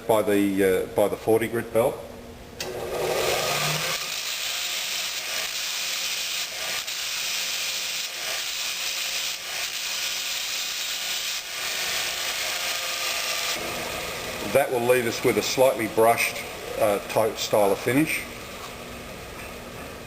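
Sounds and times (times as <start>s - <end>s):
belt grinder grinding metal: 2.7s - 16.4s
faint motor hum: 13.6s - 20.0s.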